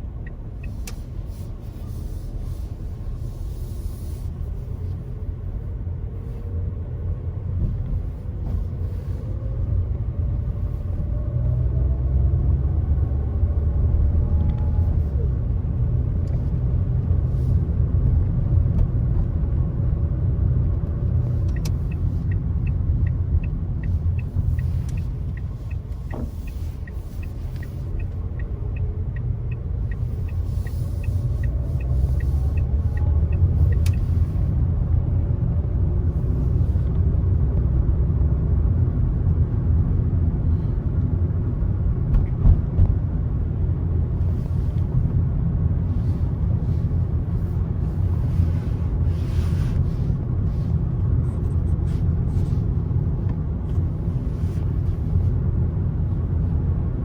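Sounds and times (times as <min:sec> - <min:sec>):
turn indicator ticking: 0:00.0 - 0:01.3, 0:20.8 - 0:35.5
car engine and road rumble: 0:00.0 - 0:57.0.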